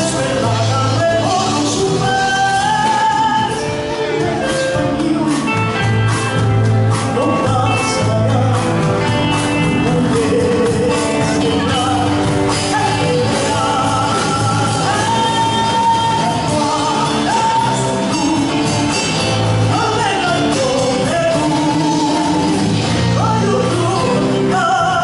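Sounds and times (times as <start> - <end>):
song with singing voice: 0.0 - 25.0.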